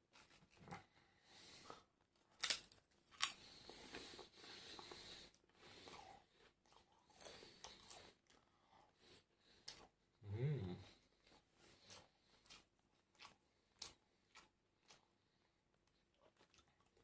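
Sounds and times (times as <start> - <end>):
crunching and chewing fried food: 0.1 - 10.0, 11.2 - 17.0.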